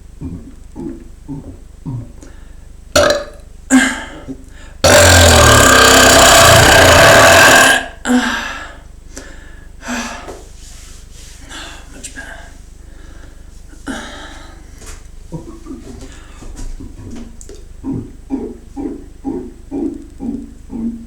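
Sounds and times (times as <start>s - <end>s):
person gulping air: 0.2s - 2.4s, 3.0s - 3.4s, 15.3s - 21.0s
person belching loudly: 3.0s - 4.0s, 4.8s - 8.1s, 17.8s - 21.0s.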